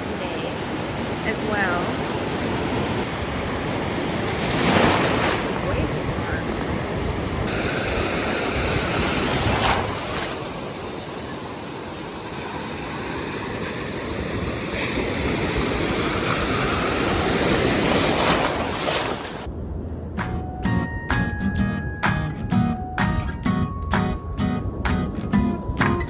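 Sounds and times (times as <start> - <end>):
ocean waves washing onto beach: 0.0 - 19.6
wind buffeting microphone: 2.4 - 11.9
acoustic guitar music: 20.2 - 26.0.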